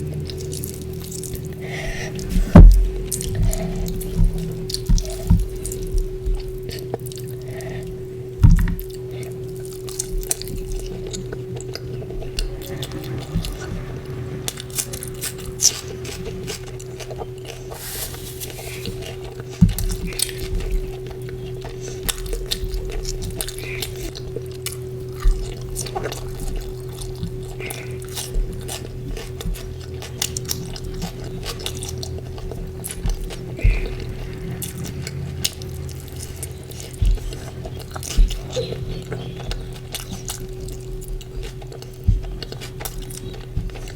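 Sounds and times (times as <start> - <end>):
steady low hum: 0.0 - 43.9
wet chewing and lip smacks: 18.8 - 43.9.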